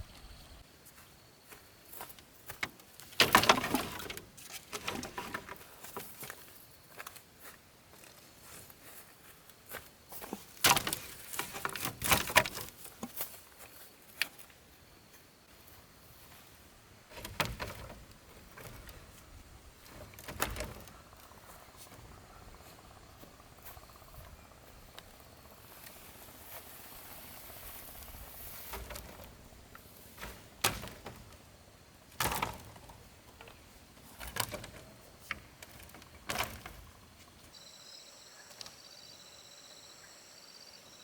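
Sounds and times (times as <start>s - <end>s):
crickets chirping: 0.0s - 3.5s, 4.8s - 41.0s
knocks and clanks: 2.6s - 6.2s, 19.8s - 22.0s
steady hiss: 24.7s - 32.1s.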